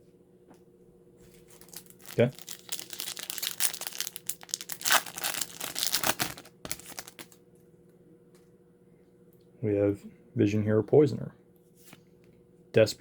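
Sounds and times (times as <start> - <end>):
foil wrapper crinkling and tearing: 1.4 - 7.4.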